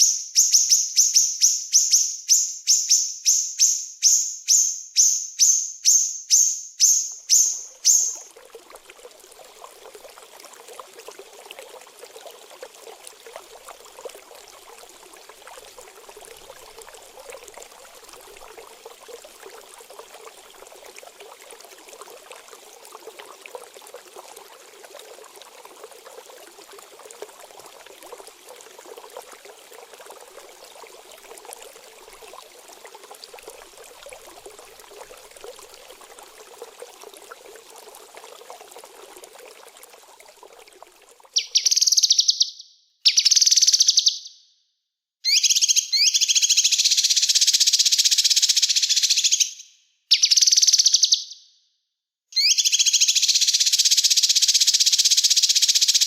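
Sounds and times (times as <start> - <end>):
trickling running water: 7.1 - 42.0.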